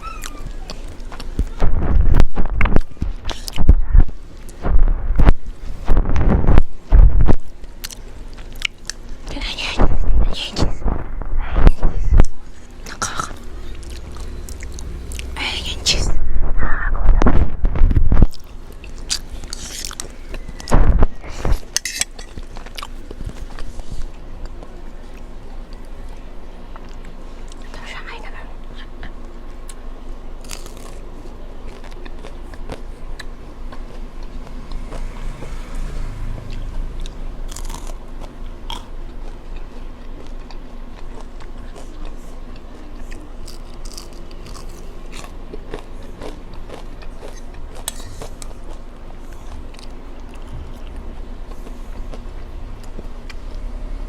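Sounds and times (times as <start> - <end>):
mouth chewing and biting food: 0.0 - 9.5, 11.7 - 15.9, 17.8 - 27.8, 28.6 - 53.8.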